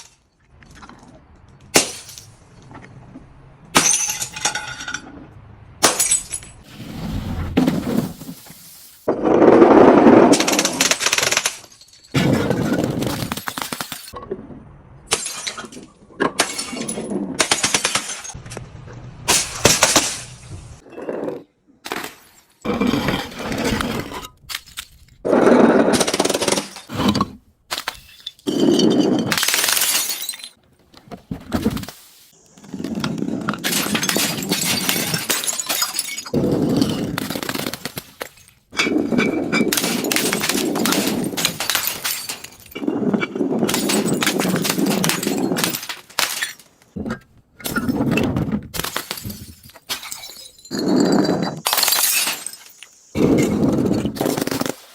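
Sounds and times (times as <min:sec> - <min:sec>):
objects being crushed: 0:05.8 - 0:14.2, 0:32.6 - 0:54.9.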